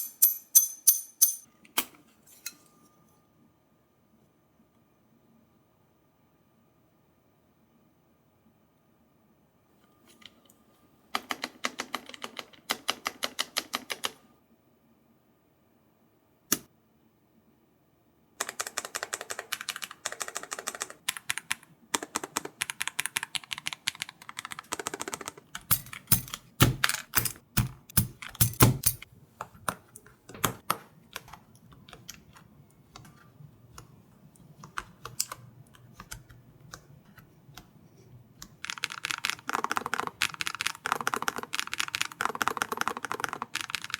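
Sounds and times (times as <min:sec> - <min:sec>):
mechanical keyboard typing: 0:11.2 - 0:14.2, 0:18.4 - 0:37.7, 0:38.4 - 0:43.9.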